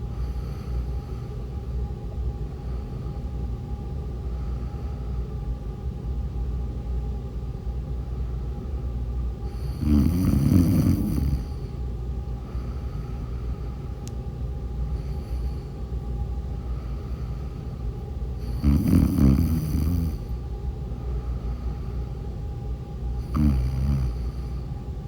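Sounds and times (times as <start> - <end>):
soft breathing: 0.0 - 1.7, 4.2 - 5.4, 9.4 - 14.1, 14.8 - 24.8
low background hum: 0.0 - 25.0
woman snoring: 9.5 - 11.6, 18.4 - 20.3, 23.2 - 24.4.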